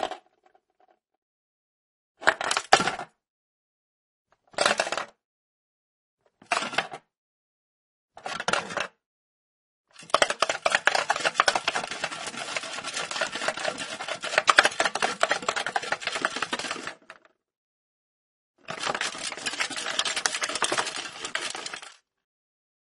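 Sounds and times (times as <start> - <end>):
ball rattling in plastic box: 10.0 - 17.2, 18.7 - 22.0.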